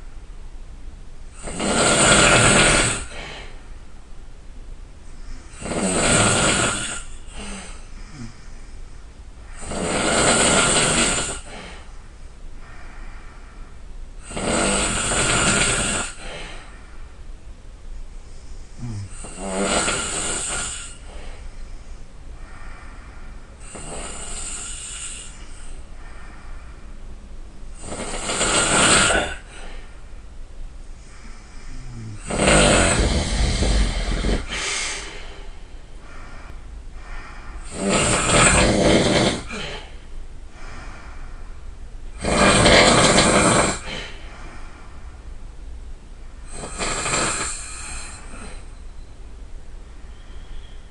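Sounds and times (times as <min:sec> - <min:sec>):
person snoring loudly: 0:01.4 - 0:03.3, 0:05.5 - 0:08.4, 0:09.6 - 0:11.7, 0:14.2 - 0:16.6, 0:18.8 - 0:21.1, 0:23.6 - 0:25.5, 0:27.8 - 0:29.6, 0:31.7 - 0:35.4, 0:37.6 - 0:40.0, 0:42.2 - 0:44.2, 0:46.5 - 0:48.7.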